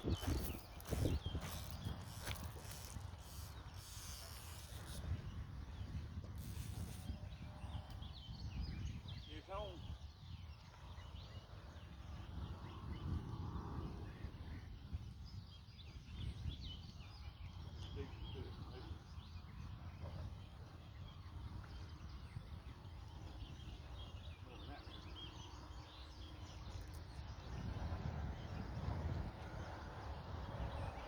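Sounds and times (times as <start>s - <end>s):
small birds chirping faintly: 0.0s - 13.2s
wind buffeting microphone: 0.0s - 31.0s.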